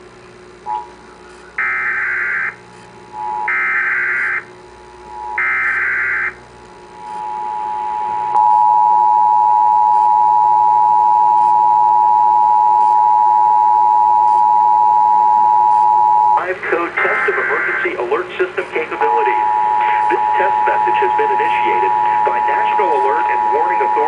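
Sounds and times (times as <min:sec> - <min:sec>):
digital data bursts: 0:16.4 - 0:24.0.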